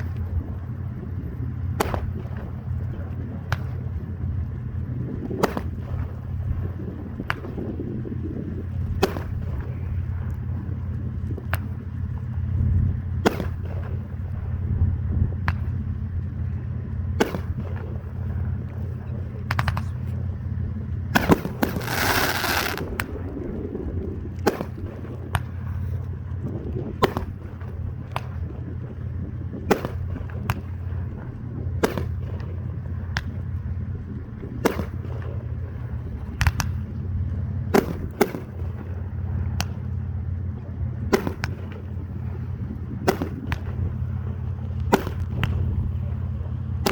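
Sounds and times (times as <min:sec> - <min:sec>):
steady low rumble: 0:00.0 - 0:46.9
fireworks bangs: 0:21.2 - 0:23.2
fireworks hissing burst: 0:21.5 - 0:23.0.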